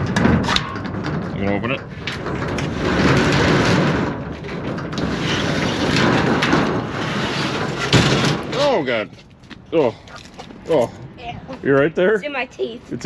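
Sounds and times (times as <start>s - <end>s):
metal door rattling open: 0.0s - 9.0s.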